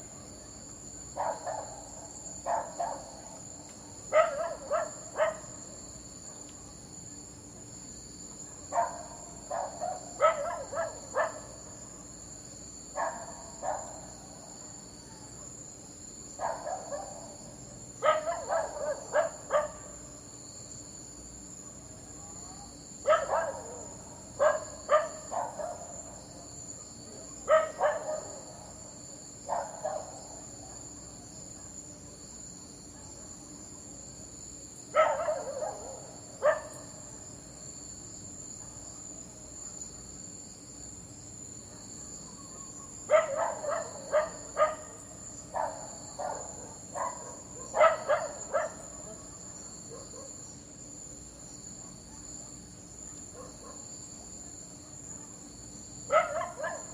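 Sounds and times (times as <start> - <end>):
dog barking: 1.2 - 3.4, 4.1 - 5.6, 8.5 - 11.6, 13.0 - 14.2, 16.4 - 17.4, 18.0 - 20.0, 23.0 - 26.2, 27.1 - 28.8, 29.4 - 32.2, 32.9 - 33.4, 34.9 - 37.0, 41.6 - 50.5, 51.8 - 53.9, 54.9 - 55.4, 56.1 - 56.9.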